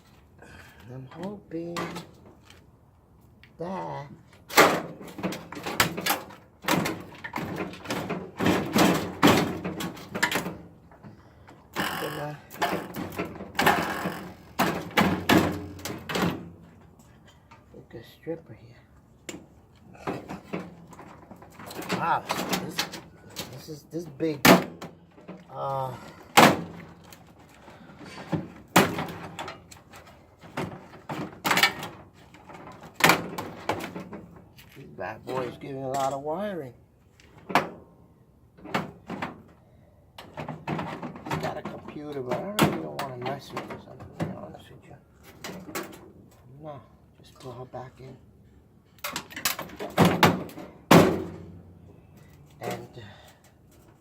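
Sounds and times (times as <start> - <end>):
appliance parts knocking and scraping: 4.5 - 17.7, 19.3 - 25.5, 26.3 - 34.6, 40.2 - 44.6.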